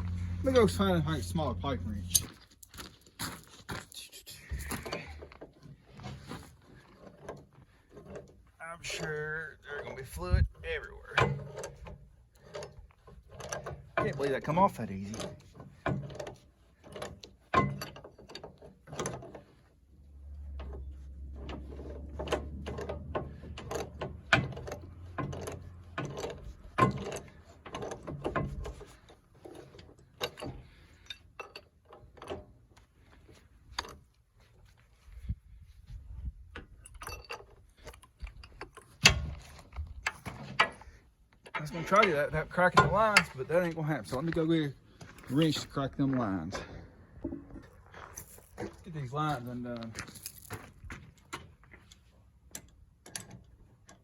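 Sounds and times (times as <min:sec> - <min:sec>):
low steady hum: 0:00.0 - 0:02.3
hand tools clanking and ratcheting: 0:00.0 - 0:02.4, 0:04.7 - 0:34.5, 0:36.6 - 0:54.0.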